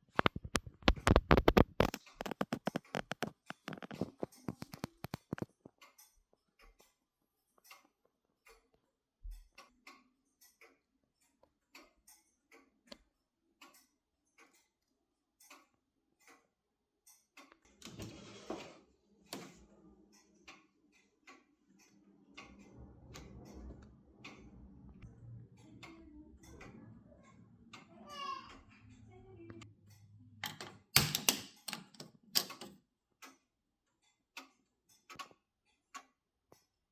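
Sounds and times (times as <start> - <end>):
clock ticking: 19.3 - 33.5
low rumbling noise: 22.0 - 28.0.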